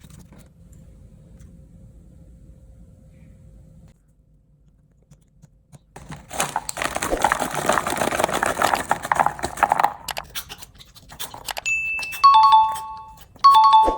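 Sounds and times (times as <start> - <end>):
snack packaging crinkling: 6.0 - 13.4
short high beep: 11.7 - 13.9
two-note chime: 11.7 - 13.9.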